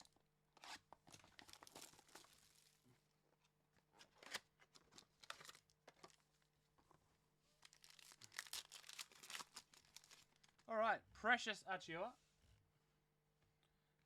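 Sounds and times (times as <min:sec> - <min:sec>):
wrapper tearing and crinkling: 0:01.2 - 0:02.8, 0:04.3 - 0:05.7, 0:07.6 - 0:10.7.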